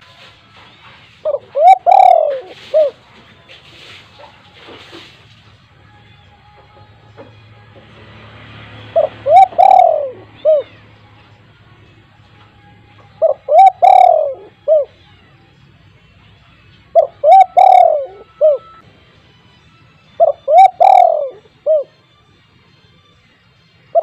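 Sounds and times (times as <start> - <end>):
dove cooing: 1.2 - 3.1, 8.8 - 10.9, 13.1 - 15.0, 16.9 - 18.8, 20.2 - 22.0.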